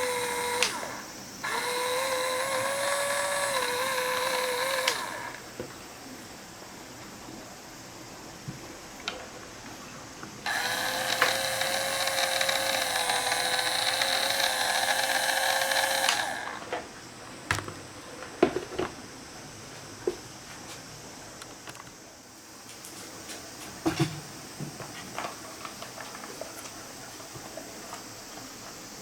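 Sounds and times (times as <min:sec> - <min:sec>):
electric pump motor whine: 0:00.0 - 0:05.6, 0:10.4 - 0:16.9, 0:17.5 - 0:18.0.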